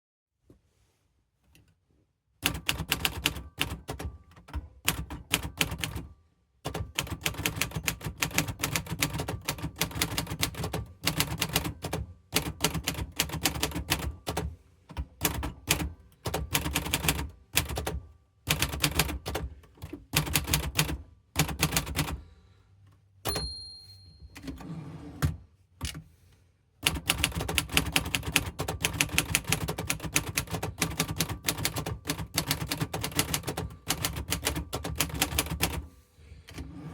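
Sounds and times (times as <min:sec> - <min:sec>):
typewriter margin bell: 0:23.3 - 0:24.7.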